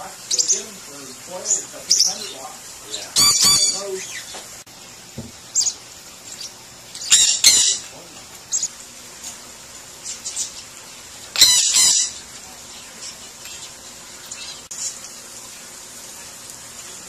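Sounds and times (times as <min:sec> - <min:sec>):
parrot screeching: 0:03.1 - 0:04.2, 0:07.0 - 0:07.9, 0:11.3 - 0:12.2
soft parrot chirps: 0:03.1 - 0:04.4, 0:05.5 - 0:07.9, 0:11.3 - 0:12.2.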